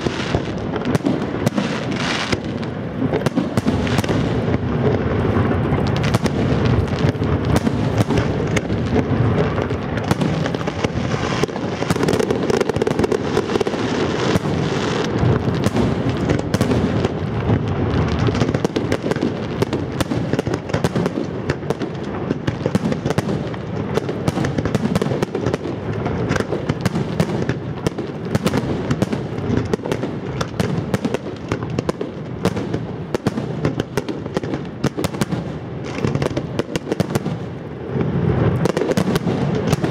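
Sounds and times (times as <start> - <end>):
fireworks bangs and crackling: 0.0 - 39.9.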